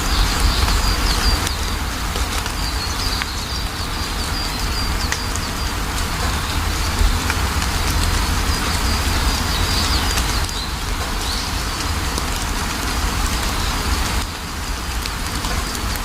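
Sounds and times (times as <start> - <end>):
small birds chirping: 0.0 - 16.0
steady rain: 0.0 - 16.0
deep low rumble: 4.3 - 12.1.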